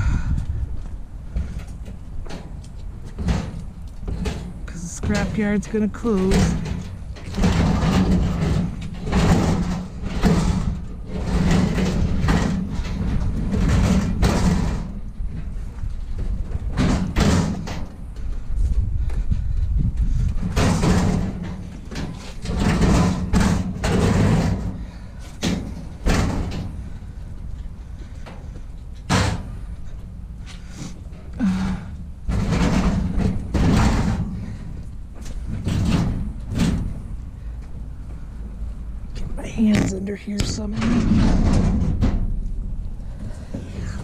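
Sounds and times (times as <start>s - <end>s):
sheet metal scraping and banging: 1.4s - 18.0s, 20.4s - 27.2s, 32.3s - 37.2s, 39.6s - 42.5s.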